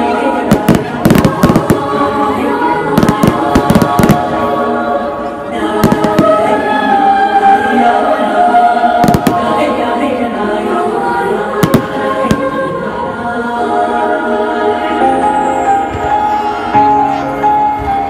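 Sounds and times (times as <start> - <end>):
music with choral singing: 0.0 - 18.0
fireworks bangs: 0.4 - 2.1, 3.0 - 4.5, 5.8 - 6.6, 9.0 - 9.7, 11.6 - 12.6.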